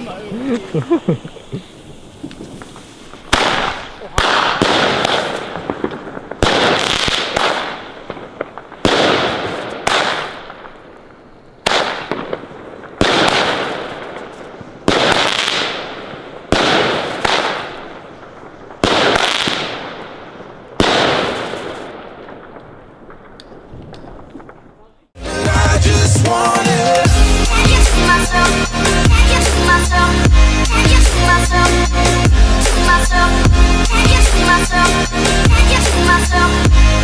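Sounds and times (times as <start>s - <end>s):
fireworks bangs: 0.0s - 37.0s.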